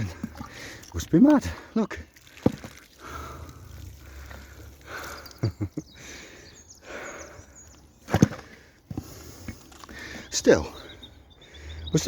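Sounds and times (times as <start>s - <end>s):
person breathing heavily: 0.0s - 0.9s, 2.9s - 7.7s.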